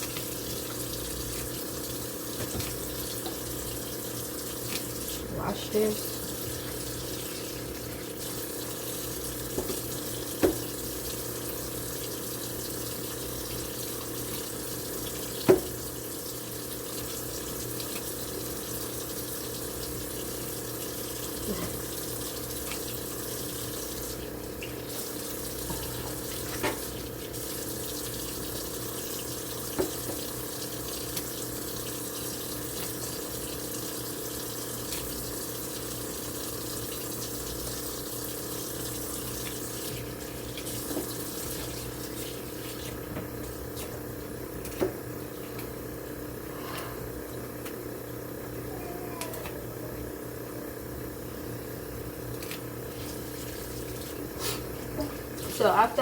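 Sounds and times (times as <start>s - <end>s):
tap running into a sink: 2.3s - 3.8s, 5.8s - 11.2s, 14.1s - 16.0s, 22.6s - 31.9s, 39.2s - 44.0s, 44.6s - 45.8s.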